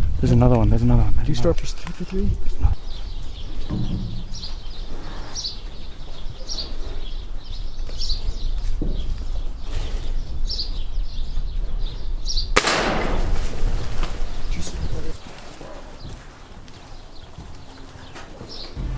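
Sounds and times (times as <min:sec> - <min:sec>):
small birds chirping: 0:00.0 - 0:12.6, 0:13.2 - 0:18.9
pellet gun firing: 0:12.6 - 0:13.6.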